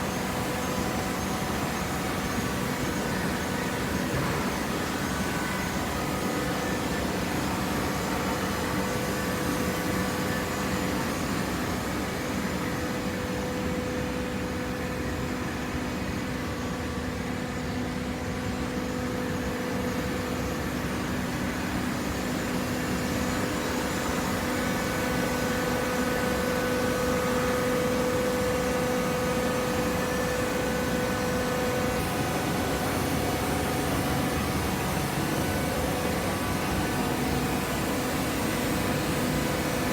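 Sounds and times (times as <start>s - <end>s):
baler machine hum and whine: 0.0s - 39.9s.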